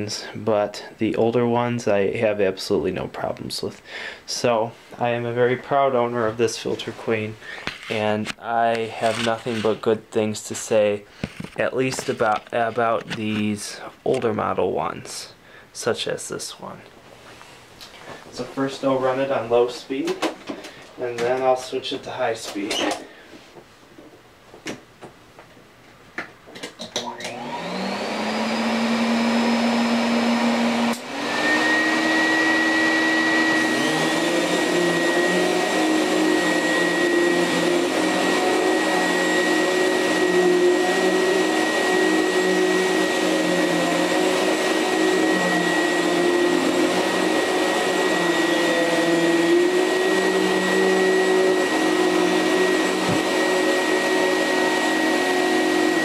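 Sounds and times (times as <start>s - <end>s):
vacuum motor humming: 27.0s - 56.0s.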